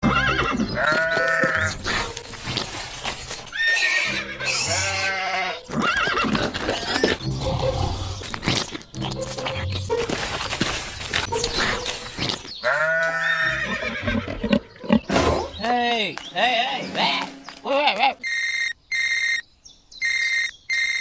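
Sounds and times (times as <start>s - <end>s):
high wavering animal cries: 3.5s - 7.8s.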